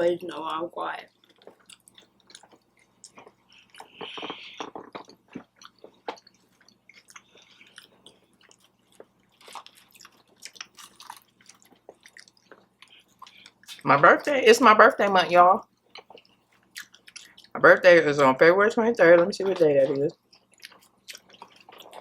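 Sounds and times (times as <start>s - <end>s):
chewing soft food: 1.0s - 13.9s, 15.6s - 17.6s, 19.9s - 22.0s.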